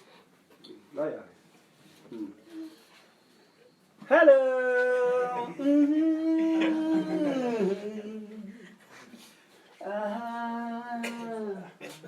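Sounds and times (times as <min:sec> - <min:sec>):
person holding long vocal tones: 0:04.2 - 0:08.8, 0:09.8 - 0:12.0.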